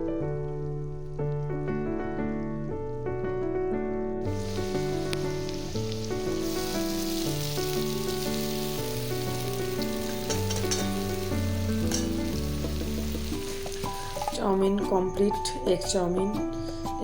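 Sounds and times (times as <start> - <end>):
background music: 0.0 - 17.0
noodles sizzling in a pan: 4.2 - 16.9.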